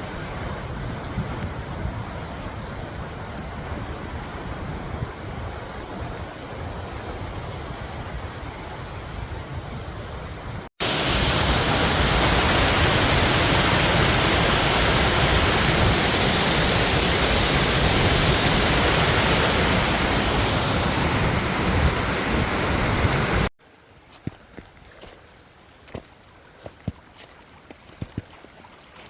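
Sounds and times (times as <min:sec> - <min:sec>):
white water rushing: 0:10.8 - 0:23.5.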